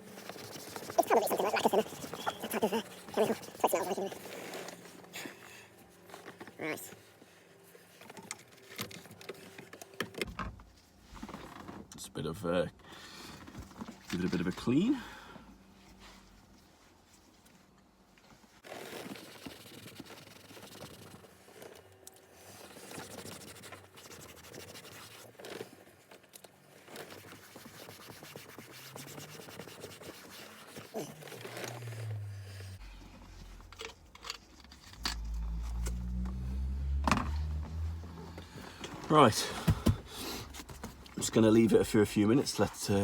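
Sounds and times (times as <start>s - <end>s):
scratchy rubbing on leather: 0.0s - 5.1s, 18.6s - 21.8s, 22.4s - 25.8s, 26.7s - 32.8s
low rumble: 32.1s - 38.6s.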